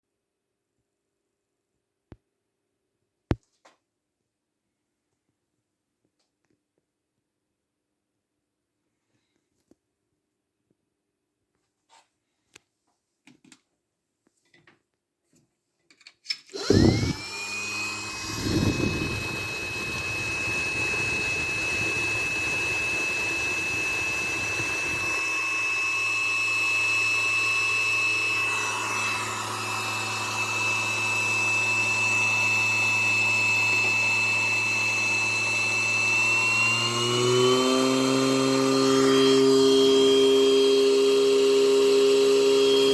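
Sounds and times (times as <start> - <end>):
electric blower whine: 16.5 - 42.9.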